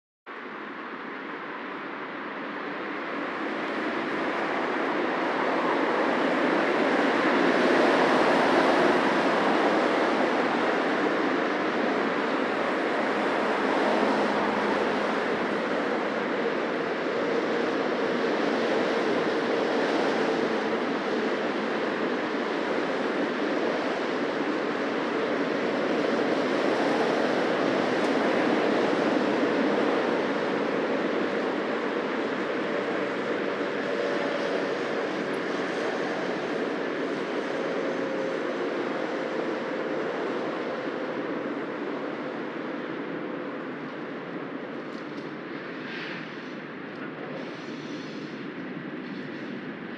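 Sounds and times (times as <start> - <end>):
cars passing by: 3.4 - 22.1.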